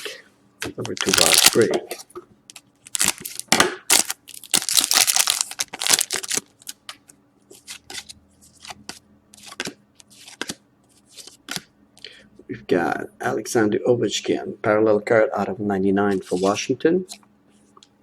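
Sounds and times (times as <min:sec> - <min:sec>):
wrapper tearing and crinkling: 0:00.9 - 0:01.7, 0:02.8 - 0:06.8.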